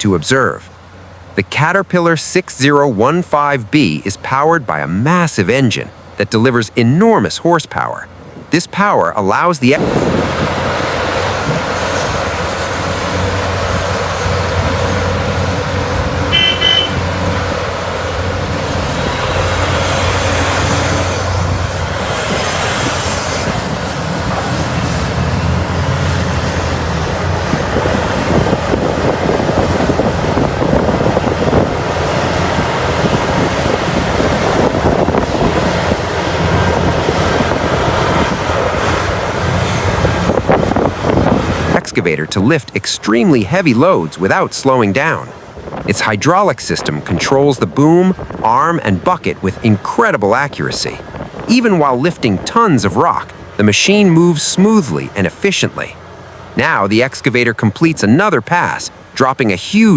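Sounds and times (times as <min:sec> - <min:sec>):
heavy diesel machinery running: 0:09.7 - 0:45.9
short high-pitched beep: 0:16.3 - 0:17.0.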